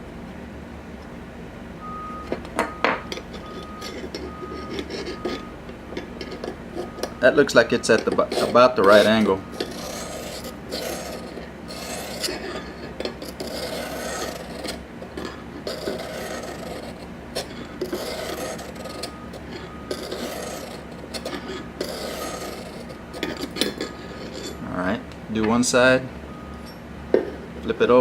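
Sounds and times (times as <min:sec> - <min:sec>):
sharpening stone rasping on knife: 0:03.3 - 0:05.5, 0:08.0 - 0:24.6.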